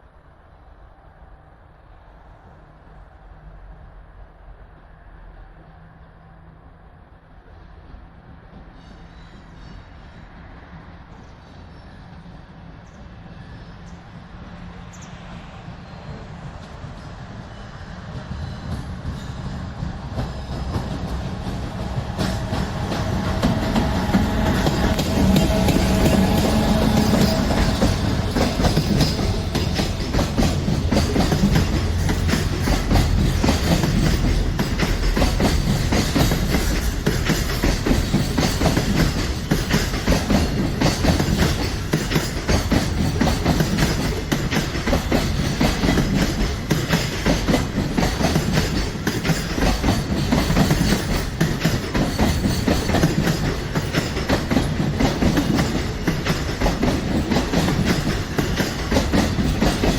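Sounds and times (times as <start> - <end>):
train wheels clattering over rail joints: 18.1 - 59.9.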